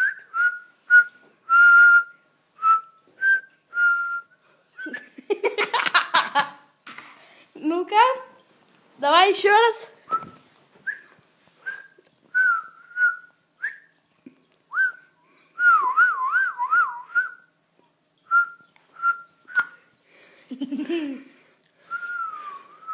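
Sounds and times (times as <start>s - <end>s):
person whistling: 0.0s - 5.1s, 10.1s - 13.9s, 14.7s - 17.5s, 18.3s - 19.8s, 21.9s - 22.9s.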